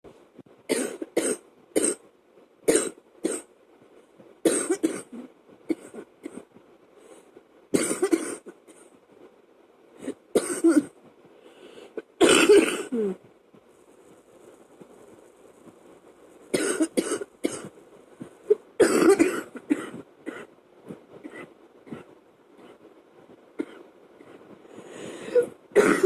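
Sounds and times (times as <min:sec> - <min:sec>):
faint fan running: 0:00.1 - 0:26.0
woman coughing: 0:07.8 - 0:08.4, 0:10.4 - 0:10.9, 0:12.2 - 0:13.2, 0:16.6 - 0:17.7, 0:18.8 - 0:20.5, 0:25.3 - 0:26.0.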